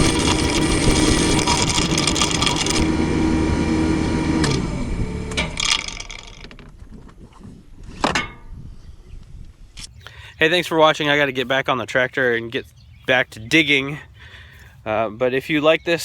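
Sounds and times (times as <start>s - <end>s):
metallic rattling and scraping: 0.0s - 3.2s, 5.3s - 8.6s
mini excavator engine running: 0.0s - 6.9s.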